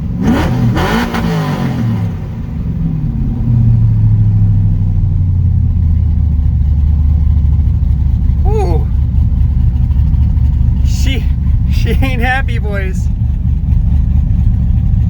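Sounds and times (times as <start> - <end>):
vee eight engine idling: 3.8 - 15.0.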